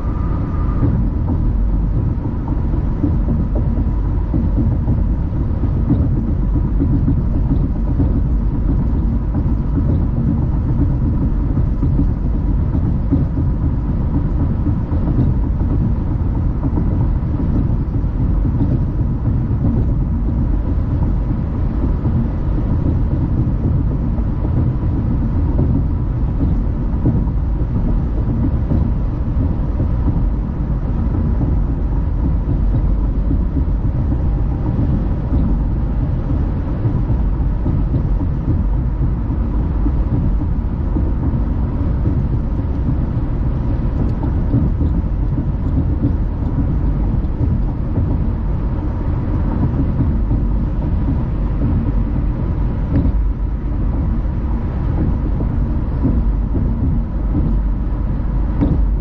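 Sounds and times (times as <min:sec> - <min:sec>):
car driving on road: 0:00.0 - 0:59.0.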